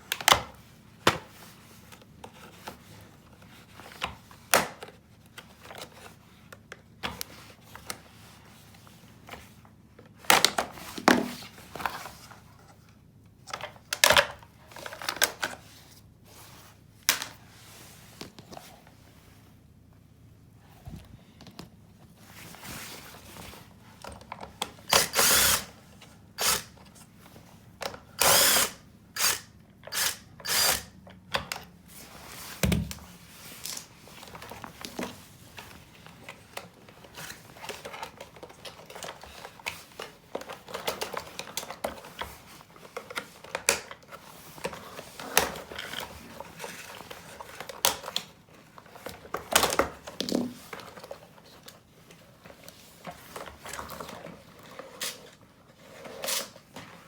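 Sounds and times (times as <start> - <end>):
power drill bursts: 24.9 - 25.7, 26.4 - 26.7, 28.2 - 30.9.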